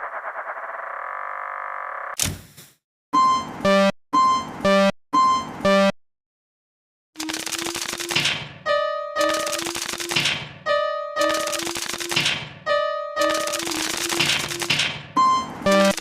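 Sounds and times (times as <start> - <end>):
rapid clicking: 7.2 - 8.4, 9.2 - 10.4, 11.2 - 12.4, 13.2 - 14.8
electronic warning signal: 13.2 - 16.0.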